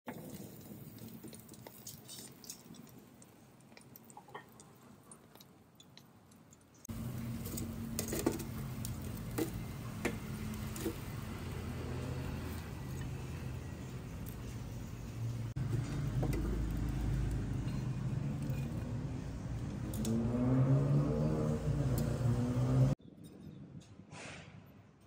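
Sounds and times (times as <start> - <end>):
kitchen utensils and dishes clinking: 7.0 - 11.6.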